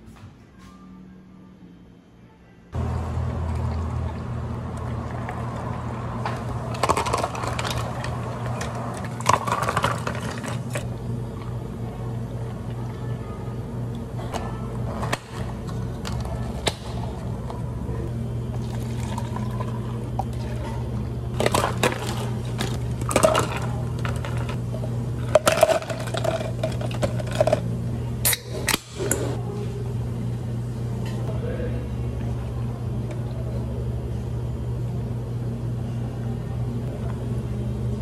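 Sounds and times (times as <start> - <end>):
cafe equipment humming: 0.0 - 38.0
drink pouring: 18.5 - 20.7
cups and utensils clinking: 18.6 - 24.6, 25.2 - 27.6.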